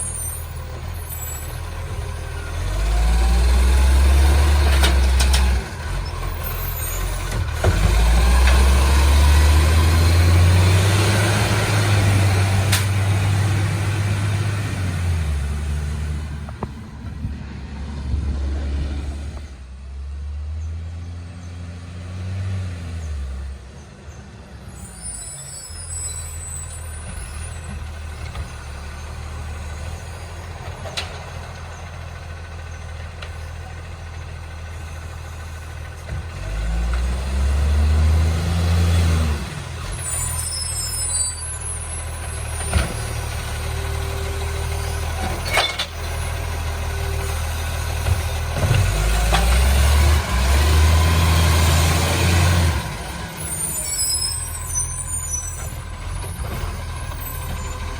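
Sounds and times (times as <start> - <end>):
garbage truck diesel engine revving: 0.0 - 24.1, 24.7 - 57.9.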